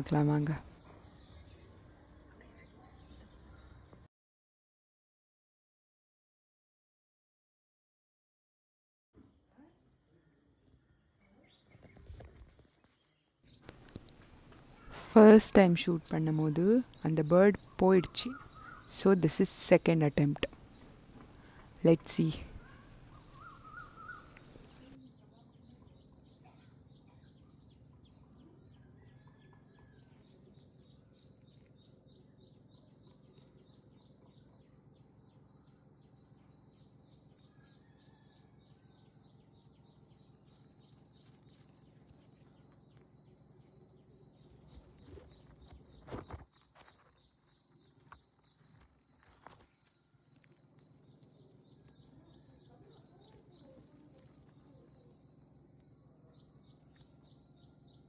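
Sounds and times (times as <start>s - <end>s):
faint bird calls: 16.4s - 19.1s, 20.4s - 25.0s.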